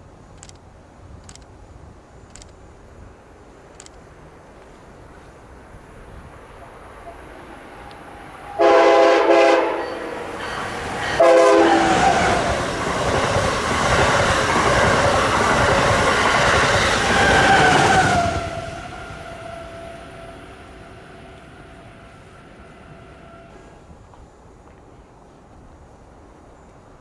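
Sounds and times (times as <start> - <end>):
train wheels and air rushing: 0.4 - 24.6
train horn blasts: 8.4 - 12.7, 17.0 - 23.8.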